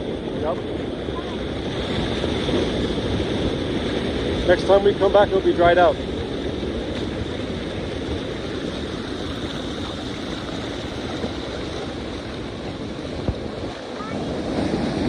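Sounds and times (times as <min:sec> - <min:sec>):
floodwater rushing: 0:00.0 - 0:15.0.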